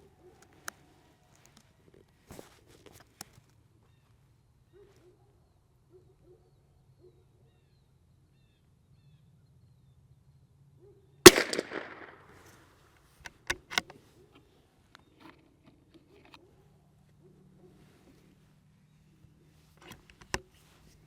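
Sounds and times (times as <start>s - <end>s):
metallic bolt clicks: 11.3s - 12.1s
rifle shot with echo: 11.3s - 12.3s.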